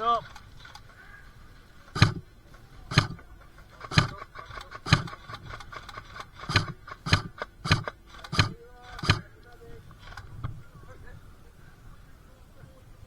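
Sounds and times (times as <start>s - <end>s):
airsoft rifle shots: 1.9s - 10.4s.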